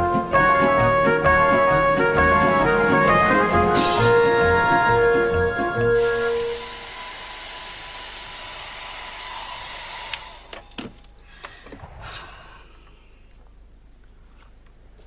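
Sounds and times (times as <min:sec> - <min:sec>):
hair dryer blowing: 0:06.0 - 0:10.5.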